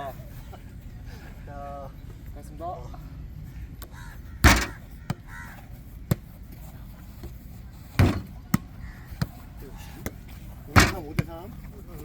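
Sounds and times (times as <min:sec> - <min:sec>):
ball thuds: 0:04.4 - 0:05.2, 0:07.2 - 0:09.4, 0:10.0 - 0:11.4.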